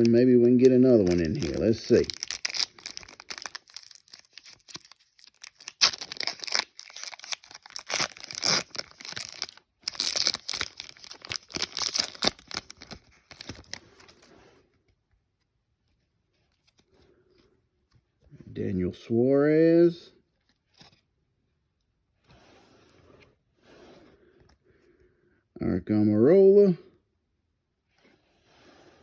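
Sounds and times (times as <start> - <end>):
foil pack tearing and crinkling: 0.0 - 14.2.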